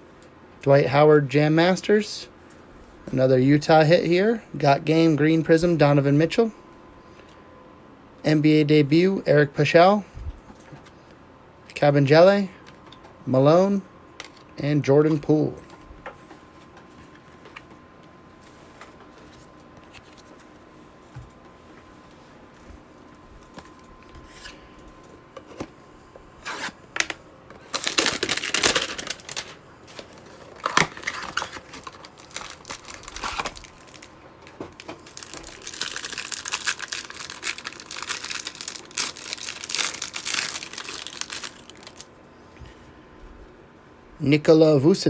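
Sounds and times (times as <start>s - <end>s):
plastic wrapping tearing: 26.4s - 42.1s
plastic crinkling: 26.5s - 42.1s.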